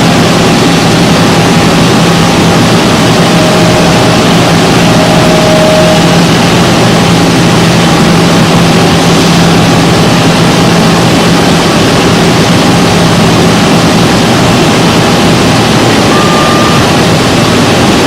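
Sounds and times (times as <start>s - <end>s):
milling machine running: 0.0s - 18.0s
faint high whine: 1.1s - 11.6s, 15.9s - 17.6s.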